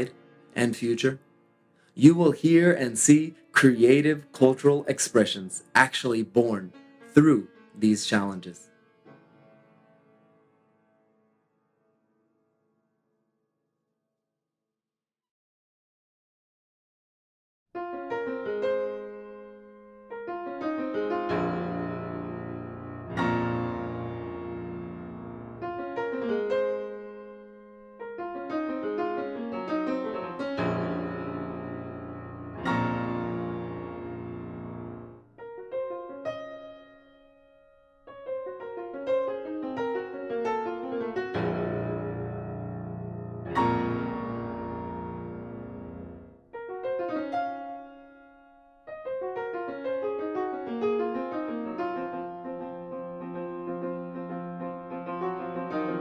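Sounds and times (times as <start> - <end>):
instrumental background music: 0.0 - 1.4, 2.0 - 9.5
piano music: 0.0 - 10.8, 17.8 - 56.0.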